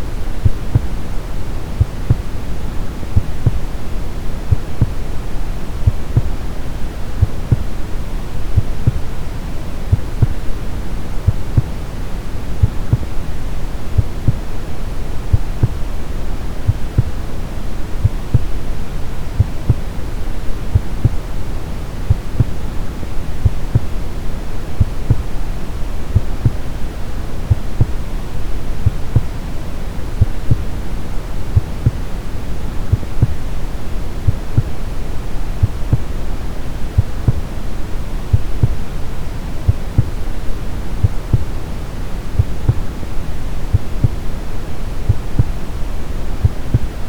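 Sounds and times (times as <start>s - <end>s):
brown noise rumbling hiss: 0.0s - 47.0s
slow heartbeat thumping: 0.4s - 1.0s, 1.8s - 2.3s, 3.2s - 3.8s, 4.5s - 5.0s, 5.8s - 6.4s, 7.2s - 7.8s, 8.6s - 9.1s, 9.9s - 10.5s, 12.6s - 13.1s, 14.0s - 14.5s, 15.3s - 15.8s, 16.7s - 17.2s, 18.0s - 18.6s, 20.7s - 21.3s, 22.1s - 22.7s, 24.8s - 25.3s, 28.8s - 29.4s, 30.2s - 30.7s, 35.6s - 36.2s, 37.0s - 37.5s, 43.7s - 44.2s, 45.1s - 45.6s, 46.4s - 47.0s.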